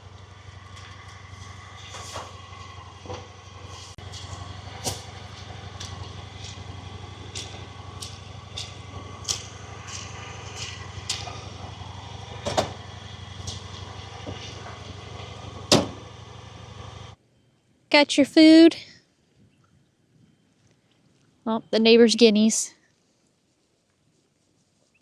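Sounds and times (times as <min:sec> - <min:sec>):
vehicle engine idling: 0:00.0 - 0:17.2
sharp taps and knocks: 0:04.0 - 0:11.7.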